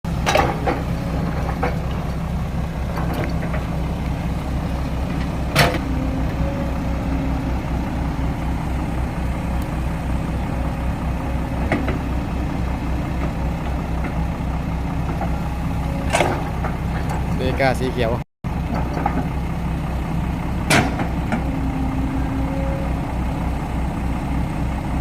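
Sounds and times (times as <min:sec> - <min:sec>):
heavy diesel engine rumbling: 0:00.0 - 0:25.0.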